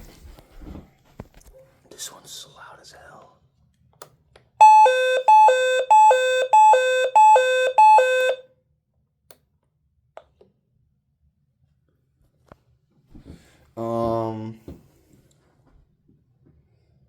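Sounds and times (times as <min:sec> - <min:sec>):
two-tone alarm siren: 0:04.6 - 0:08.4.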